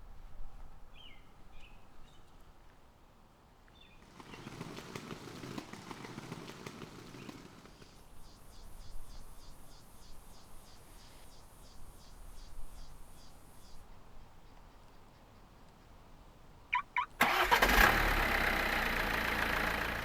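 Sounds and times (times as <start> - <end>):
bird chirps: 16.7 - 17.2
quick high ticking: 16.7 - 17.9.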